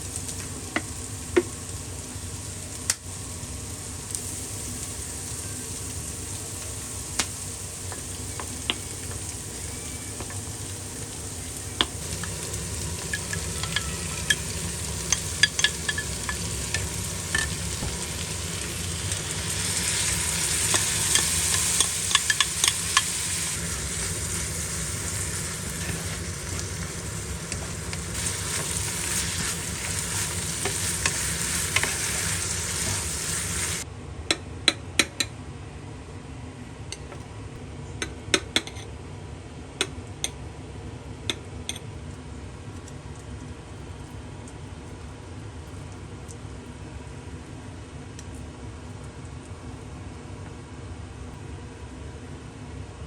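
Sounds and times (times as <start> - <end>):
food sizzling in frying pan: 0.0 - 33.8.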